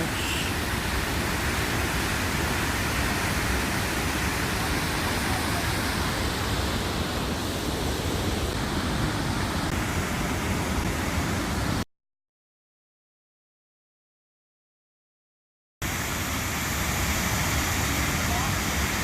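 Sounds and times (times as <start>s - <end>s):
waterfall rushing hiss: 0.0s - 11.8s, 15.8s - 19.0s.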